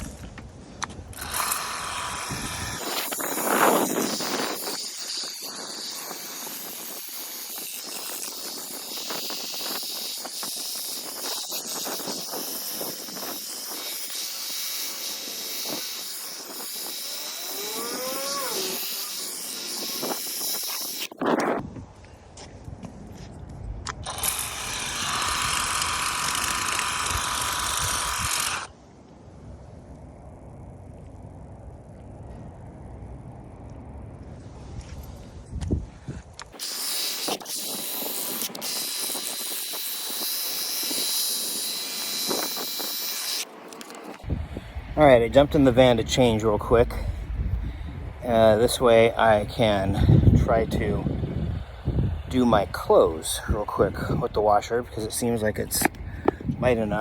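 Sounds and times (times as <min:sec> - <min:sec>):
pressure washer water jet hissing: 0:01.4 - 0:21.1.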